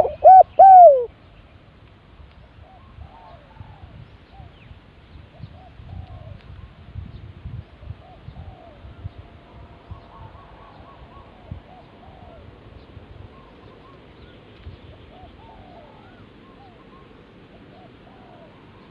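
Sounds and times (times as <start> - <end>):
doves cooing: 0.0 - 1.1, 15.1 - 18.9.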